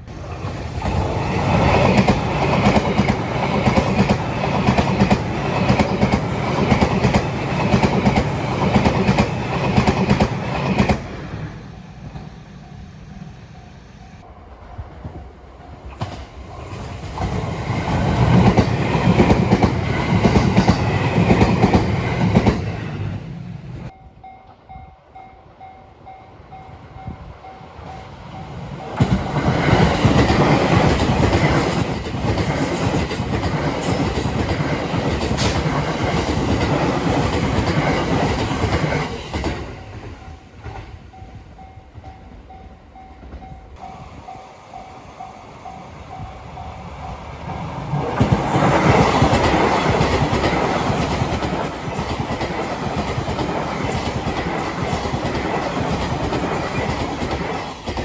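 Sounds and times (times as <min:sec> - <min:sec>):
train wheels clattering on rail joints: 0:00.2 - 0:12.4, 0:15.8 - 0:22.9, 0:29.0 - 0:41.0, 0:47.6 - 0:58.0.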